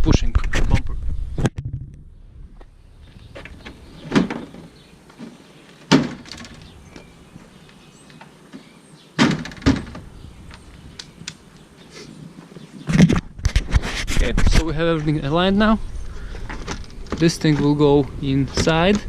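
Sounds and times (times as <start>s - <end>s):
plastic bumper knocks and snaps: 5.9s - 6.7s, 9.2s - 10.0s.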